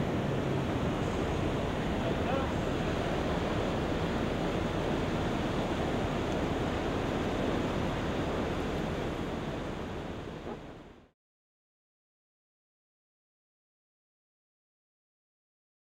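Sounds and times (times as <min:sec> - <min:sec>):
ocean surf: 0:00.0 - 0:11.1
wind: 0:00.0 - 0:11.2.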